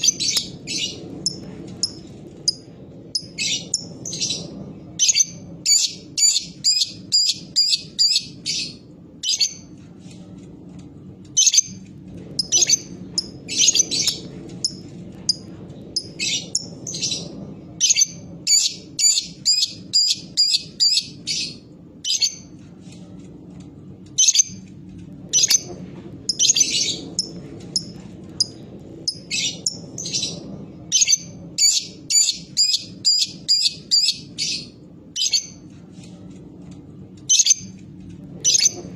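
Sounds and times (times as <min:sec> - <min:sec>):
lovebird chirping: 0:05.0 - 0:09.6, 0:17.8 - 0:22.4, 0:29.1 - 0:35.6.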